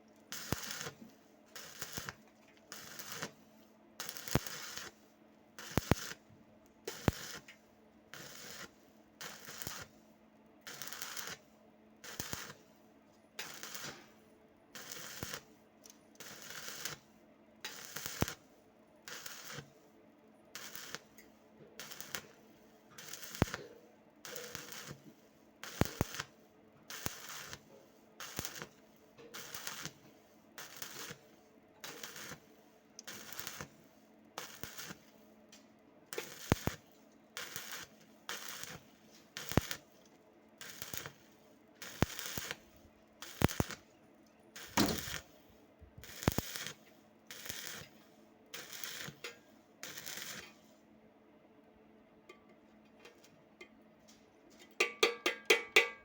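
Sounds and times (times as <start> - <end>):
welding arc crackling and popping: 0.3 - 3.4, 4.0 - 5.0, 5.6 - 6.2, 6.9 - 9.9, 10.6 - 11.4, 12.0 - 12.6, 13.4 - 14.1, 14.7 - 17.0, 17.7 - 18.4, 19.1 - 19.7, 20.6 - 22.4, 23.0 - 26.3, 26.9 - 35.0, 36.1 - 40.0, 40.6 - 43.9, 44.6 - 50.6.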